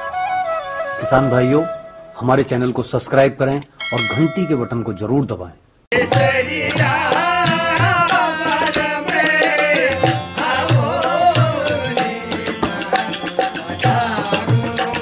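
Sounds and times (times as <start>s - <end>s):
steady drum beat: 5.9s - 15.0s
sharp percussion strokes: 6.0s - 15.0s.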